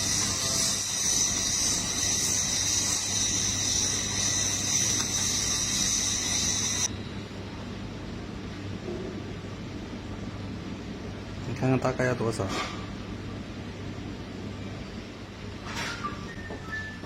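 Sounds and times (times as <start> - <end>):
air hissing from valve: 0.0 - 6.9.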